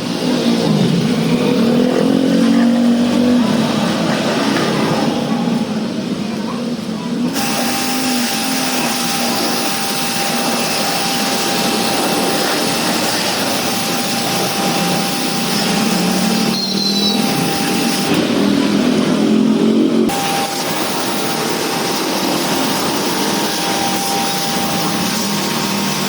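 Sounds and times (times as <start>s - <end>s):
pressure washer pump whine: 0.0s - 26.0s
water jet hissing: 7.2s - 26.0s.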